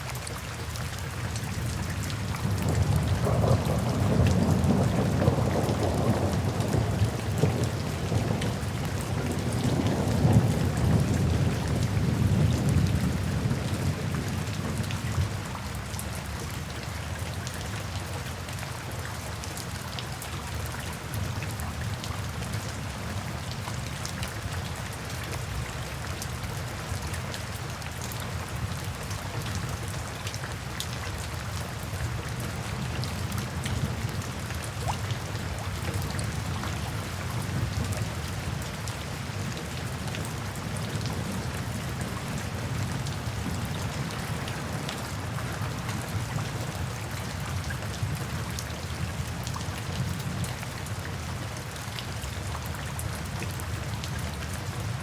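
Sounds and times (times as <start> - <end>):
steady rain falling: 0.0 - 55.0
thunder rumbling: 2.5 - 14.8.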